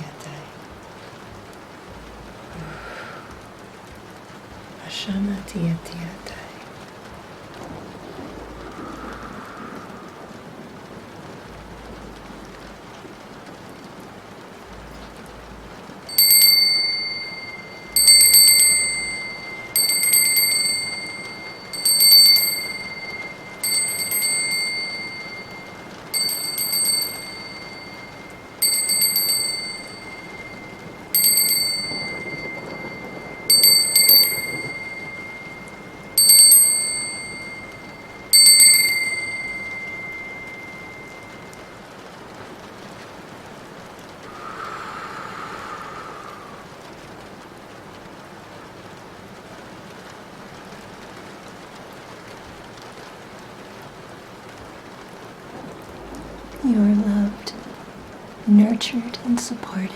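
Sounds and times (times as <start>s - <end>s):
steady rain: 0.0s - 59.9s
small metal bell ringing: 16.1s - 41.8s.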